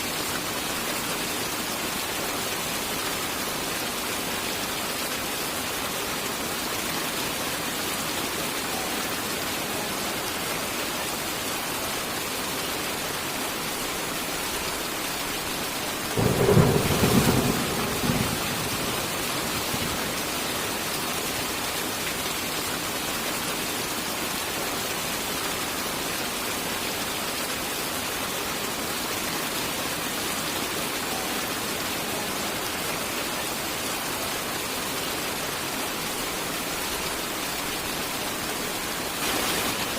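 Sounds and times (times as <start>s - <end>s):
heavy rain: 0.0s - 39.9s
thunderclap: 16.2s - 20.0s.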